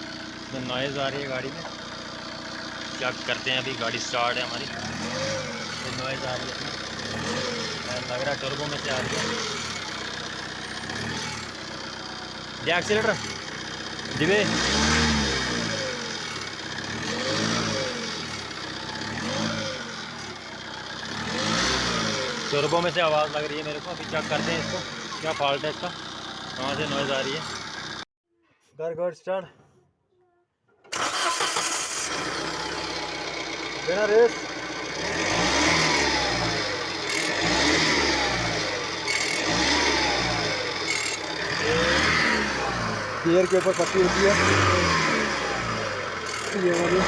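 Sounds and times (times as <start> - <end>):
diesel engine revving: 0.0 - 28.1, 30.9 - 47.0
metal rattle on throttle release: 30.8 - 34.6, 45.4 - 47.0.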